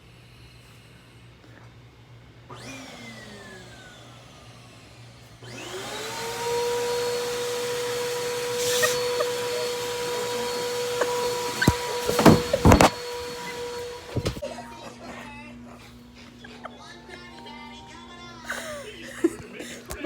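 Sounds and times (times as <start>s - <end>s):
vacuum cleaner motor whine: 2.3s - 14.4s.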